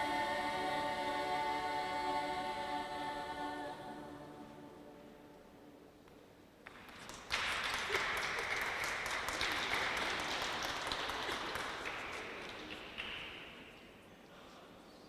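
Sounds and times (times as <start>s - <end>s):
audience applauding: 6.6s - 13.6s.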